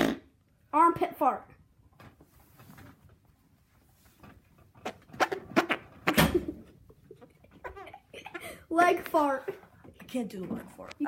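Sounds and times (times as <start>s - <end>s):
armpit farts: 0.0s - 0.4s, 4.8s - 6.8s.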